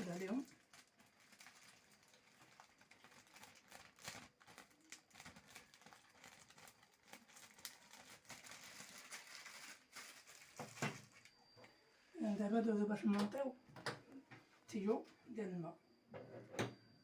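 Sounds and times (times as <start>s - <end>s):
plastic bag crinkling: 0.0s - 11.4s.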